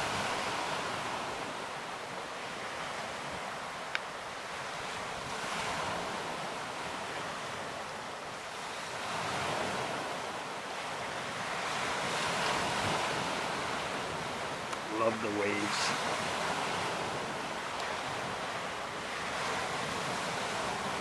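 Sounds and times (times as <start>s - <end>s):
waves washing onto shore: 0.0s - 21.0s
wind buffeting microphone: 0.0s - 21.0s.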